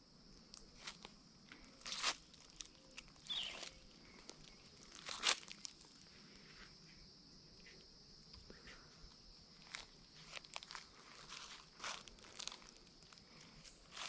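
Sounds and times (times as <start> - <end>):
footsteps crunching on dry leaves: 1.8 - 6.0, 9.6 - 14.0.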